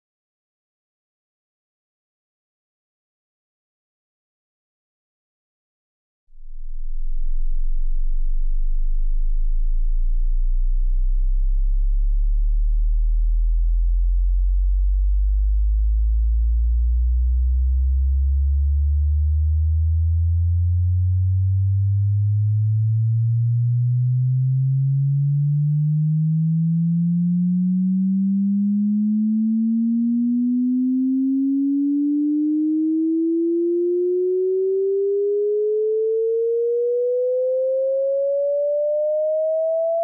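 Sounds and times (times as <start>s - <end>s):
sine tone sweeping upward: 18.1s - 40.0s.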